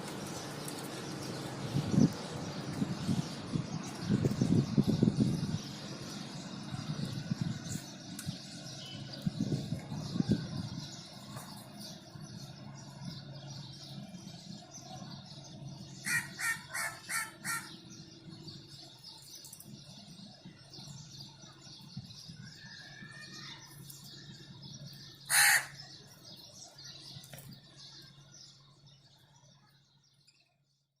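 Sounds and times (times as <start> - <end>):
budgerigars chattering and chirping: 15.8 - 18.1, 24.6 - 26.6
budgerigar squawk: 16.0 - 17.8, 25.3 - 25.8.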